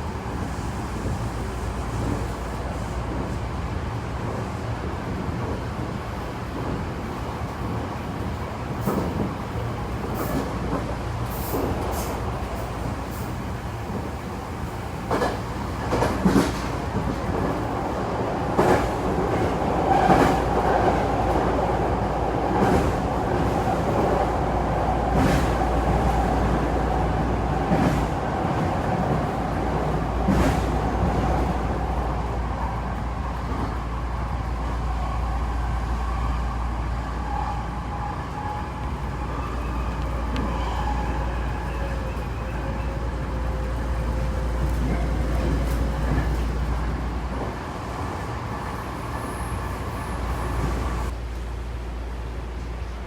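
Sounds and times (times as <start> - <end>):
train rumble and hum: 0.0 - 53.0.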